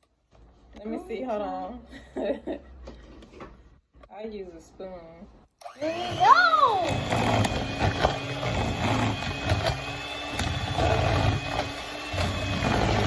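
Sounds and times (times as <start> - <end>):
electric hand mixer humming: 5.6 - 13.0.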